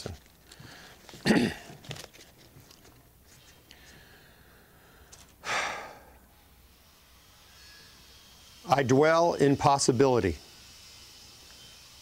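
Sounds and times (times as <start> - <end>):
man breathing: 0.4 - 1.2, 3.4 - 6.8.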